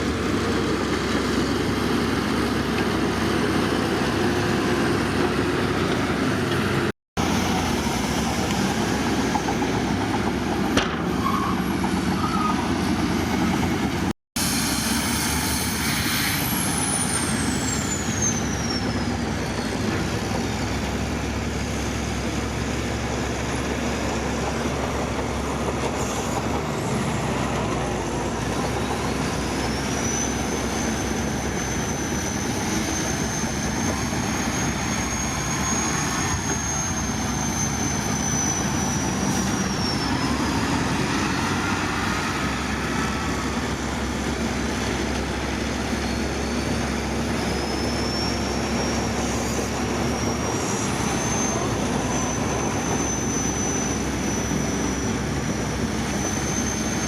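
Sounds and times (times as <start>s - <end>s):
high thin squeal: 11.1s - 13.8s, 14.4s - 57.0s.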